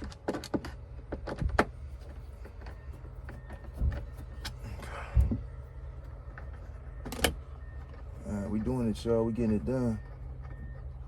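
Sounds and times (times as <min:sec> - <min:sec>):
clicks and knocks of plastic parts: 0:00.0 - 0:04.6.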